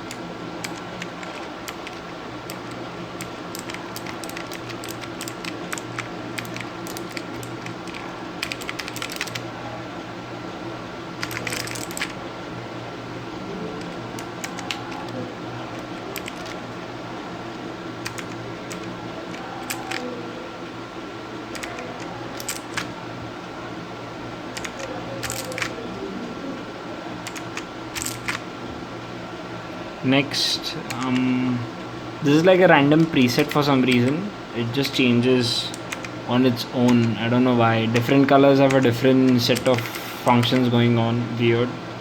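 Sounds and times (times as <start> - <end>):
faint constant whine: 0.0 - 42.0
steady electrical hum: 0.0 - 42.0
mechanical keyboard key clicks: 0.1 - 9.4, 21.6 - 22.9.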